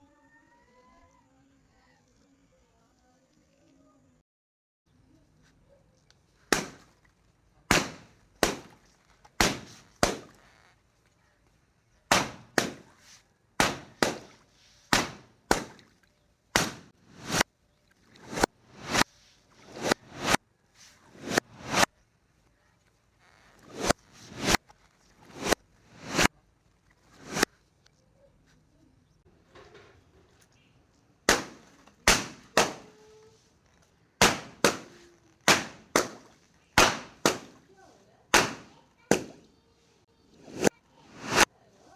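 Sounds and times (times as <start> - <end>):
water balloons bursting: 6.5 - 7.1, 7.7 - 10.7, 12.0 - 17.5, 18.2 - 20.4, 23.3 - 26.3, 31.2 - 33.2, 34.2 - 37.7, 38.3 - 39.5.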